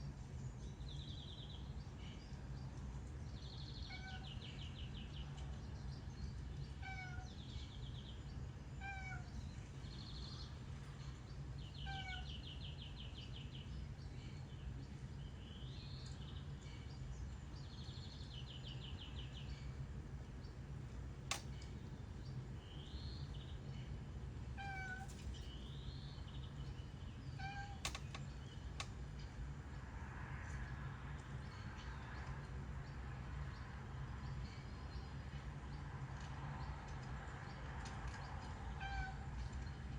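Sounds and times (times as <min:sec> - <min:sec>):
cat chirping meows: 0:03.8 - 0:04.4, 0:06.8 - 0:07.4, 0:08.8 - 0:09.4, 0:11.7 - 0:12.6, 0:24.6 - 0:25.3, 0:27.2 - 0:28.1, 0:38.8 - 0:39.3
steady low hum: 0:09.3 - 0:30.0.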